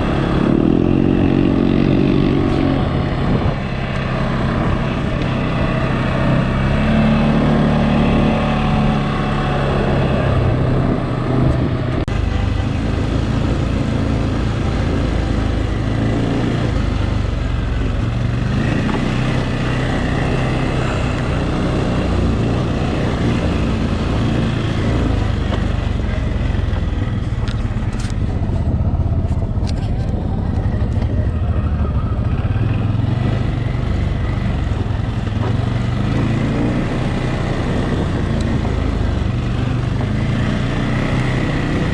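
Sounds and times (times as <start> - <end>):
atv engine running: 0.0 - 41.9.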